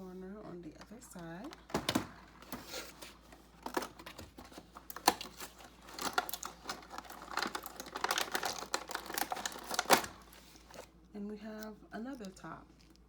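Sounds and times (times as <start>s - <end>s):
small clicks taps and crinkles: 3.3s - 10.9s, 11.5s - 13.0s.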